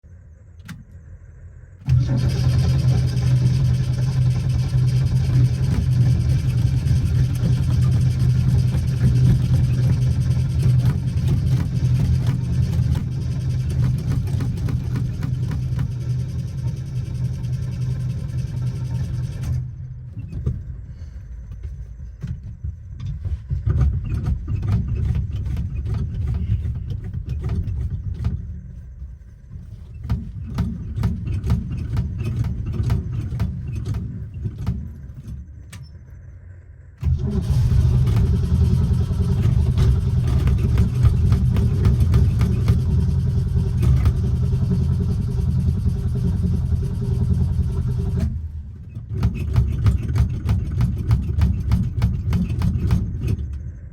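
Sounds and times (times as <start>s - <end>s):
engine cranking and sputtering: 0.1s - 53.9s
engine running loudly: 1.9s - 20.6s, 37.0s - 48.4s.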